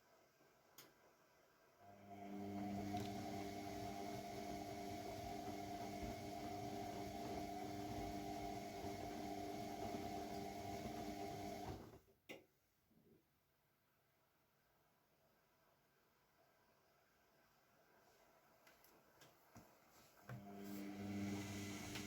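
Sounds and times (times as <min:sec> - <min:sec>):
washing machine churning: 0:02.2 - 0:11.9, 0:20.4 - 0:22.0.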